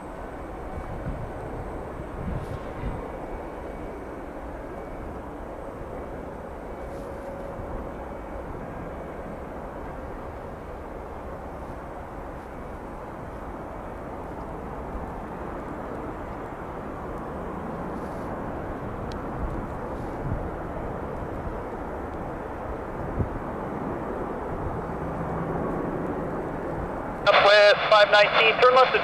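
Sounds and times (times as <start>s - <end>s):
distant jet engine rushing: 9.4s - 29.0s.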